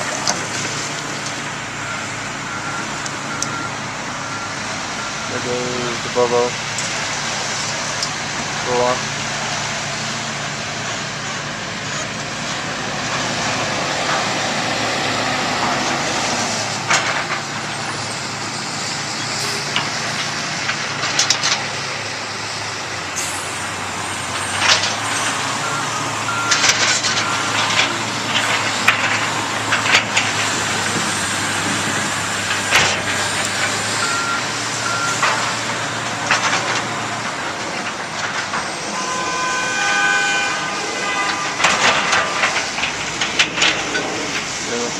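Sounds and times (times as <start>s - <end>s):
diesel machinery and truck engines: 0.0s - 44.9s
sharp bangs and clanks: 40.5s - 44.9s.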